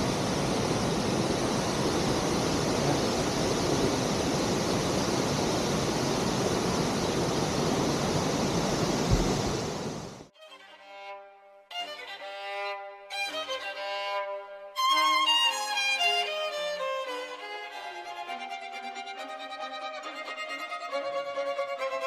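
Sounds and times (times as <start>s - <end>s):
waterfall rushing: 0.0s - 10.3s
solo violin music: 10.3s - 22.0s.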